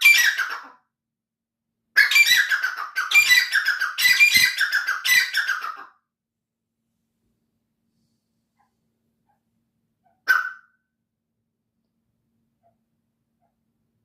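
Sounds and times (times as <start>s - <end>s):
songbird chirping and warbling: 2.0s - 5.8s.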